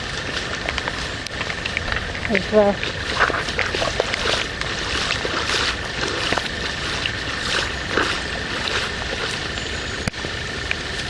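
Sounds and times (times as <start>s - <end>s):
floodwater rushing across path: 0.0s - 11.0s.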